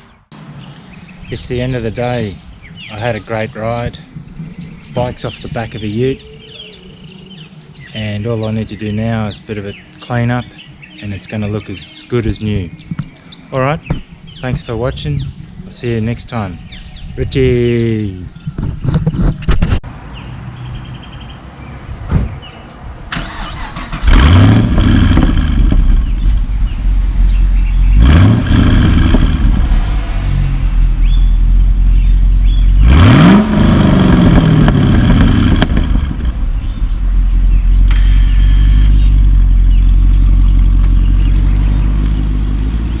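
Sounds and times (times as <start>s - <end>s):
car engine revving and idling: 23.2s - 43.0s.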